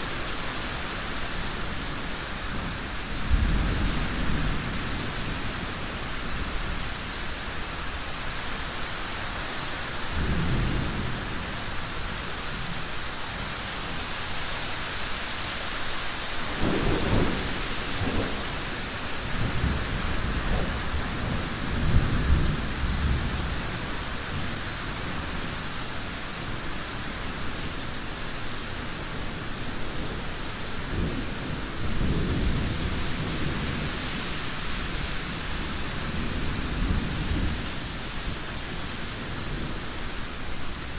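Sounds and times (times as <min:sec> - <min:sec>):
heavy rain hissing: 0:00.0 - 0:40.9
low thunder rumbling: 0:16.5 - 0:23.8, 0:30.9 - 0:39.8.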